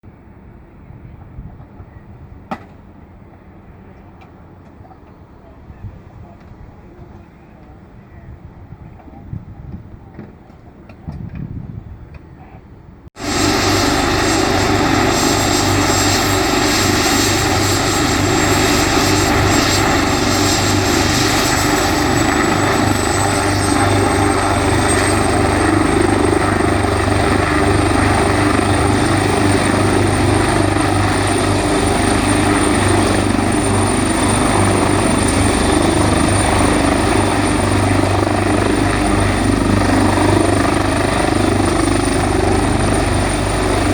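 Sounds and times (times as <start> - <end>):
helicopter rotor and turbines: 13.2 - 43.9
high turbine whine: 13.2 - 43.9.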